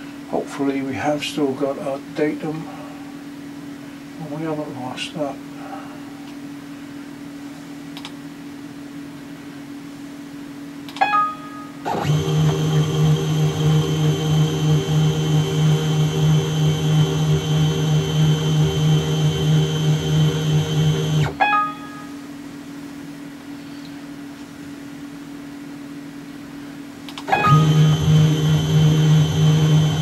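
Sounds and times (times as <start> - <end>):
low steady hum: 11.8 - 21.4, 27.3 - 30.0
mill motors whining: 11.9 - 21.4, 27.3 - 30.0.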